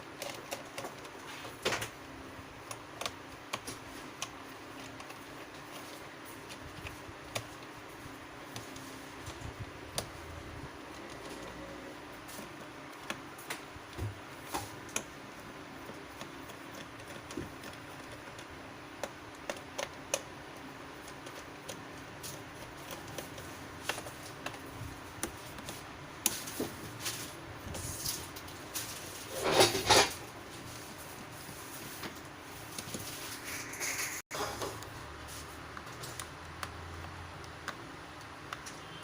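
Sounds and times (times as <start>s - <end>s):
clattering and rustling: 26.3s - 36.2s.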